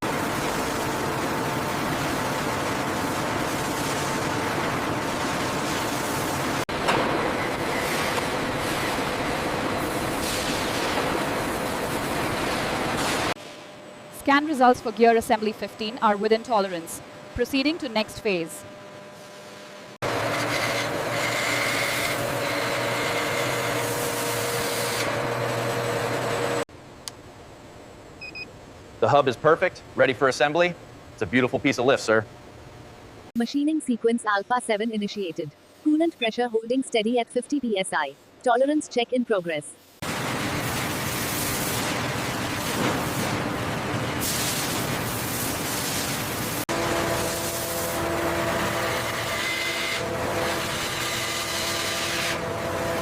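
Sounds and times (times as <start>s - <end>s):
factory machinery hissing: 0.1s - 13.7s, 39.8s - 51.1s.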